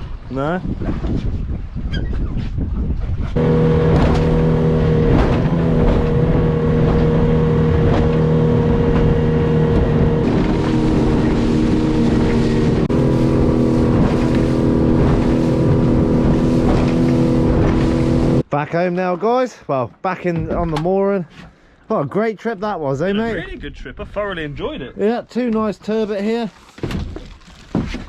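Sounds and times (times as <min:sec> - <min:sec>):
boat motor droning: 0:03.4 - 0:18.4.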